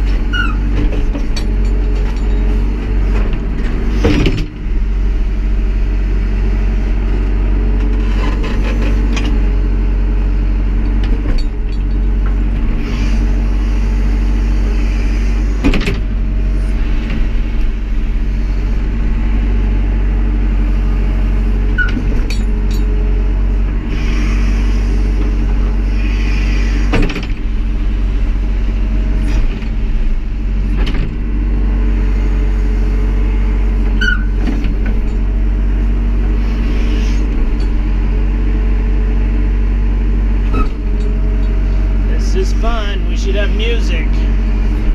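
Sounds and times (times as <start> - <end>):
tractor engine running: 0.0 - 26.0, 26.9 - 44.9.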